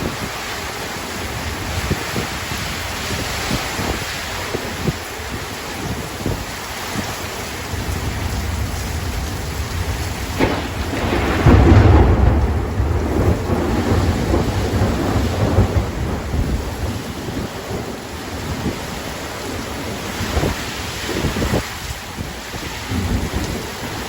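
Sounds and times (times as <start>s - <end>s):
heavy rain falling: 0.0s - 24.0s
thunder rumble: 0.0s - 24.0s
thunder crack: 8.0s - 18.9s.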